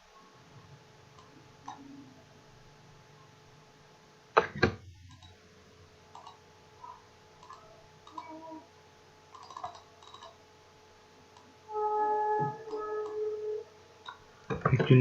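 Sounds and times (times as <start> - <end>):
faint steady hum: 0.0 - 15.0
computer clicks: 5.1 - 5.4, 6.1 - 6.4, 7.4 - 8.3, 9.3 - 10.4.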